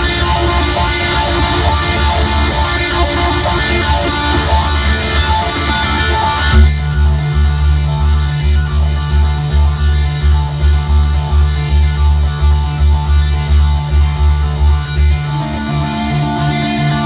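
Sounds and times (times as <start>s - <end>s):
rock band playing live: 0.0s - 8.0s, 14.5s - 17.0s
pulsing bass line: 0.0s - 17.0s.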